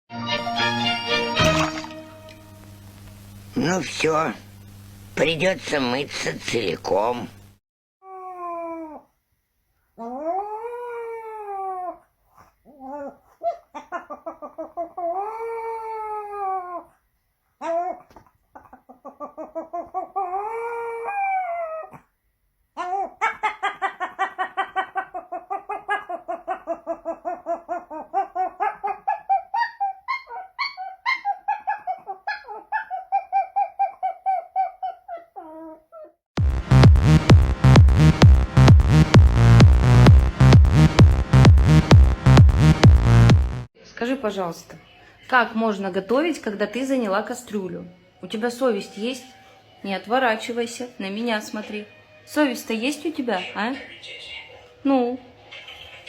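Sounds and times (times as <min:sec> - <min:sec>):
pet howling: 0:10.0 - 0:12.0, 0:12.7 - 0:17.0, 0:19.0 - 0:22.0, 0:22.8 - 0:36.2.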